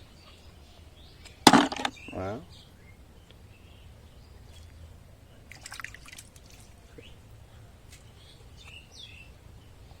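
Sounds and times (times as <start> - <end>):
birds chirping: 0.1 - 3.0.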